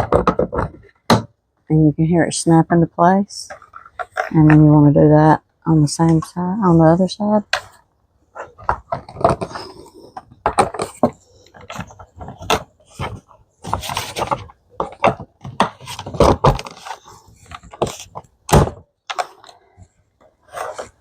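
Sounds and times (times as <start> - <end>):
plastic parts clicking and knocking: 0.0 - 1.7, 3.4 - 4.8, 7.4 - 21.0.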